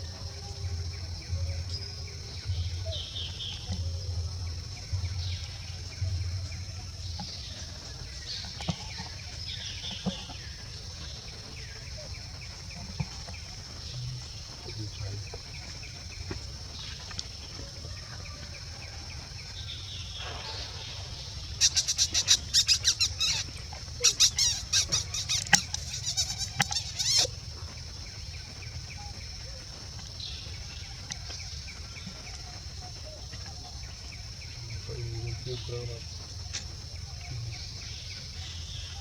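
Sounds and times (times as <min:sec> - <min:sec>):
rapid insect chirps: 0:00.0 - 0:39.0
high-pitched insect drone: 0:20.2 - 0:39.0.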